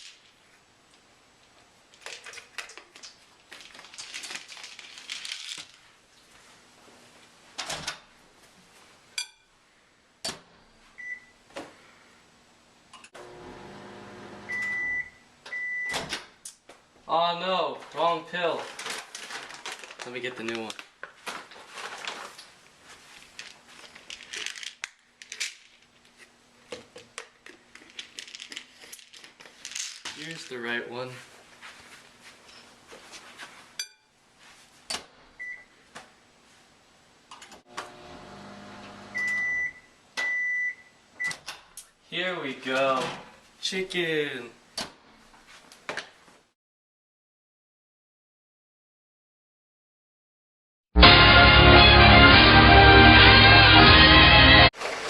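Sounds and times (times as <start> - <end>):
small objects rustling and clicking: 0.0 - 6.2, 17.9 - 30.8.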